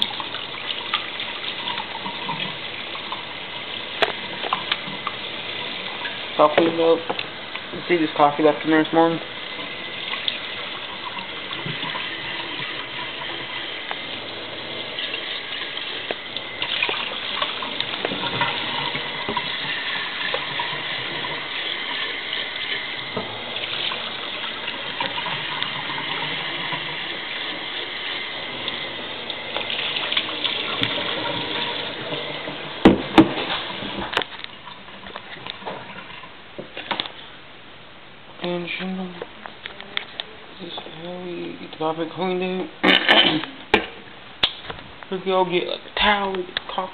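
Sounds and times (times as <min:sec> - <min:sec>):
tap water running into sink: 0:00.0 - 0:37.1.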